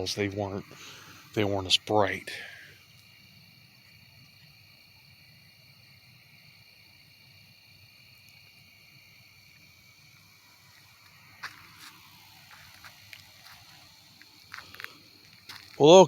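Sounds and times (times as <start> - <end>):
crickets and insects trilling: 0.0 - 16.0.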